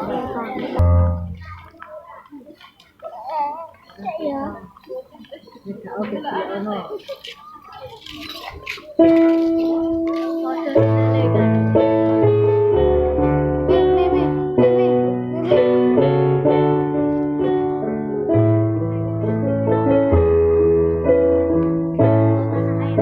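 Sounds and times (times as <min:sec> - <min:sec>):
electric keyboard chords: 0:00.0 - 0:01.6, 0:09.0 - 0:23.0.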